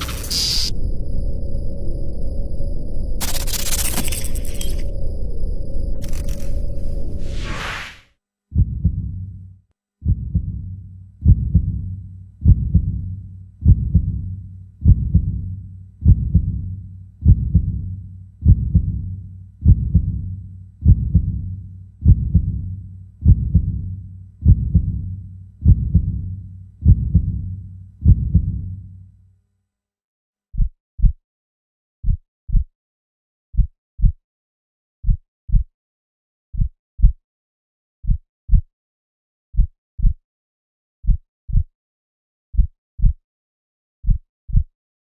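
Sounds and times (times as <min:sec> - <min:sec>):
heartbeat thumps: 0:08.5 - 0:09.4, 0:10.0 - 0:28.7.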